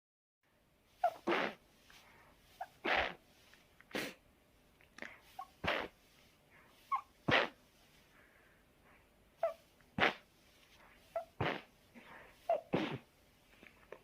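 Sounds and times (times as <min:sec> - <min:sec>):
person sneezing: 0:01.1 - 0:01.6, 0:02.6 - 0:03.2, 0:03.9 - 0:04.2, 0:05.2 - 0:06.1, 0:07.2 - 0:07.6, 0:09.5 - 0:10.3, 0:11.1 - 0:13.1.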